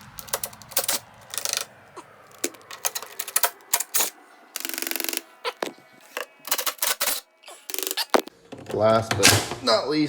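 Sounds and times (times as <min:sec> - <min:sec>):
hand tool clicks and knocks on metal: 0:00.0 - 0:01.7, 0:02.4 - 0:05.7
ratchet clicking: 0:00.0 - 0:01.7, 0:02.3 - 0:05.3.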